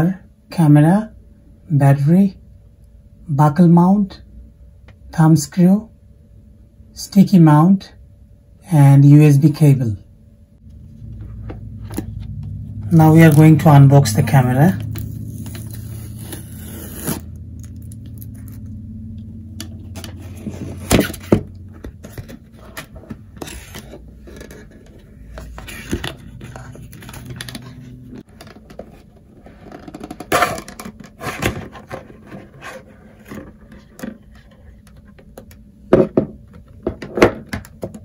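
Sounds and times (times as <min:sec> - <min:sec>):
steady low hum: 0:00.0 - 0:38.0
packaging being handled and opened: 0:14.8 - 0:18.7, 0:19.8 - 0:35.0.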